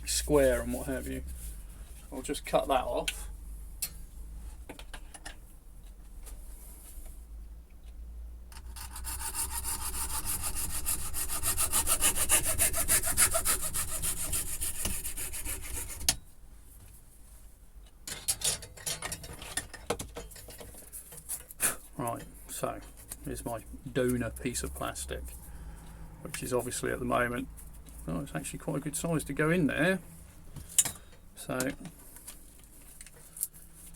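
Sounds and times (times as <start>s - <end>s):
saw cutting plastic tube: 8.6s - 16.1s.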